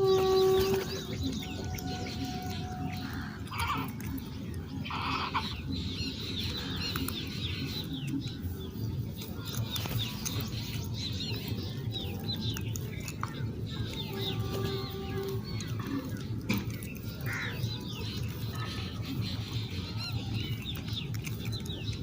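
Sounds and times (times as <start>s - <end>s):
birds chirping: 0.0s - 22.0s
steady low rumble: 0.0s - 22.0s.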